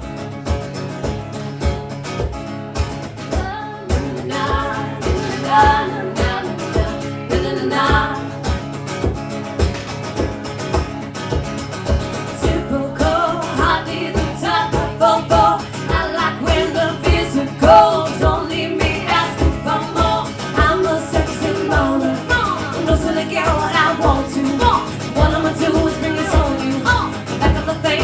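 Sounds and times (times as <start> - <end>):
guitar: 0.0 - 28.0
person singing: 3.4 - 8.5, 12.4 - 28.0.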